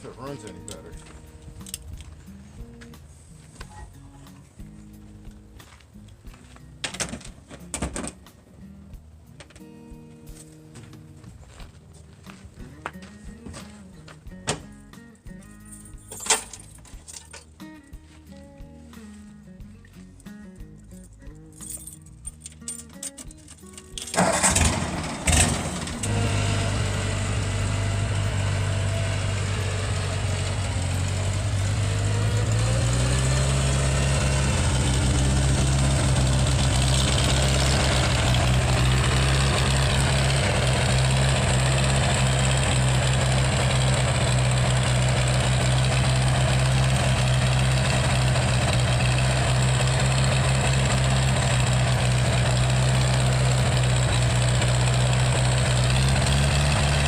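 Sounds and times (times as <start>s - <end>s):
engine starting and running: 22.3s - 57.0s.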